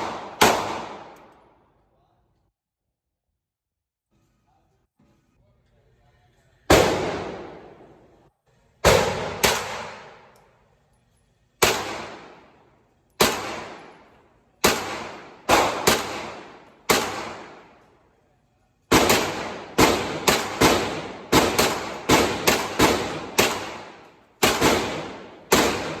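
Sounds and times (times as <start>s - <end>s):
gunshots with echoing tail: 0.0s - 1.6s, 6.7s - 8.2s, 8.8s - 10.3s, 11.6s - 12.6s, 13.2s - 18.0s, 18.9s - 26.0s.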